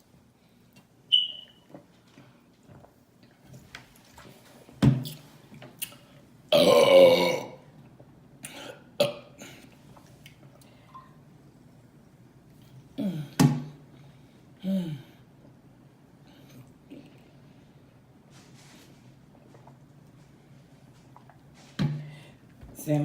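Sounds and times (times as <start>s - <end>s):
woman burping: 6.5s - 7.6s.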